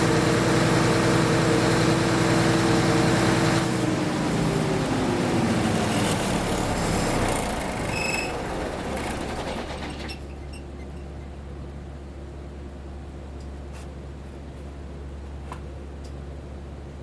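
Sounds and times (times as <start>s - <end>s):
diesel generator shutting down: 0.0s - 10.6s.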